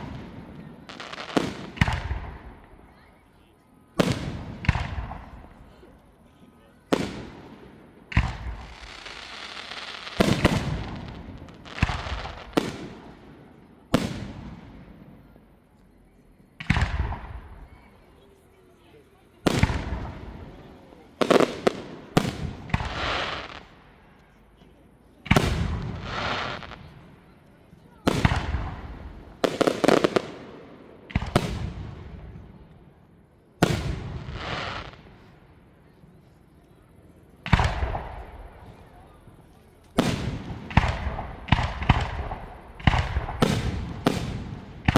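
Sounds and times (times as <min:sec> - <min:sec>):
fireworks hiss: 0:00.0 - 0:02.8, 0:06.9 - 0:15.0, 0:19.4 - 0:24.6, 0:25.3 - 0:27.3, 0:28.1 - 0:30.6, 0:33.6 - 0:35.4, 0:39.8 - 0:44.9
fireworks bangs echoing: 0:00.0 - 0:03.2, 0:03.9 - 0:05.9, 0:06.9 - 0:15.2, 0:16.6 - 0:18.1, 0:19.3 - 0:24.0, 0:25.2 - 0:27.4, 0:28.0 - 0:32.6, 0:33.6 - 0:35.4, 0:37.4 - 0:39.1, 0:39.8 - 0:44.9.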